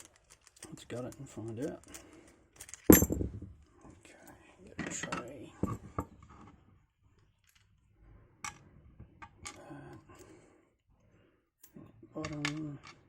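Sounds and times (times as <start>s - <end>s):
faint handling noise: 0.0s - 10.3s.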